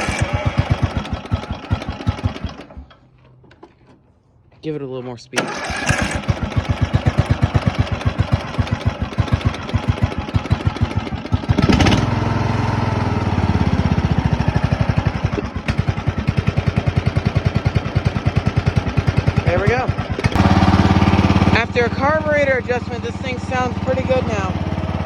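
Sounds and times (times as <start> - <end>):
mower engine idling and revving: 0.0 - 4.0, 5.4 - 25.0.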